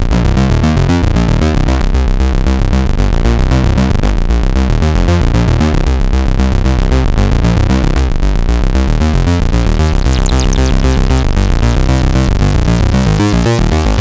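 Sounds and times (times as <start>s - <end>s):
pulsing bass synthesizer sequence: 0.0s - 14.0s
bright high sweeping tones: 10.0s - 11.8s.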